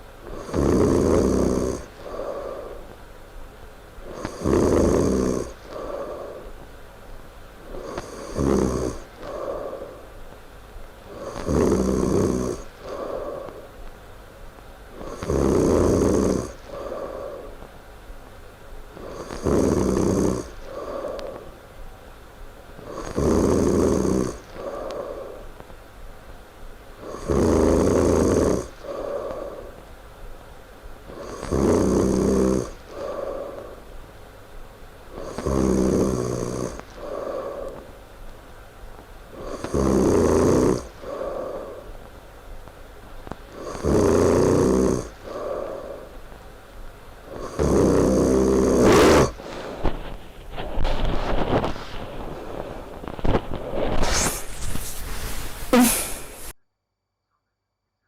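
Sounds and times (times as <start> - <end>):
person snoring loudly: 0.3 - 2.8, 4.1 - 6.5, 7.7 - 10.0, 11.1 - 13.6, 15.0 - 17.6, 19.0 - 21.5, 22.8 - 25.5, 27.0 - 29.8, 31.1 - 33.8, 35.1 - 37.8, 39.3 - 41.9, 43.5 - 46.2, 47.3 - 49.4, 55.7 - 56.5.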